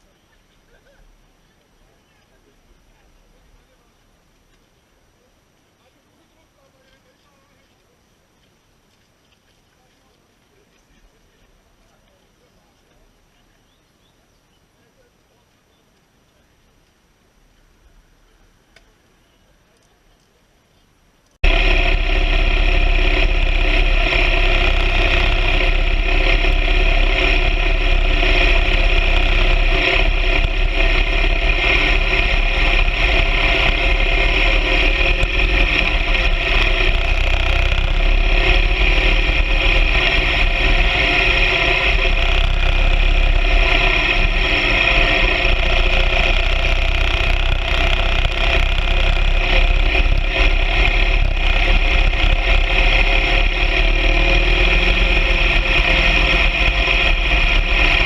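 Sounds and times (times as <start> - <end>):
motorcycle engine droning: 21.4 - 58.0.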